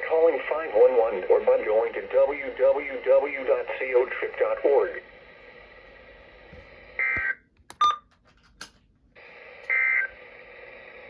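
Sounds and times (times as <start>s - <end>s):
radio hiss: 0.0s - 7.4s, 9.2s - 11.0s.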